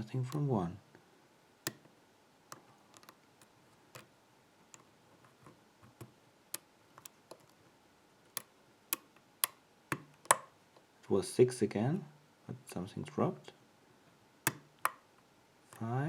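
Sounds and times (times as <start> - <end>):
lock pick metal clicks: 2.5 - 4.1, 8.3 - 10.6, 14.5 - 15.1.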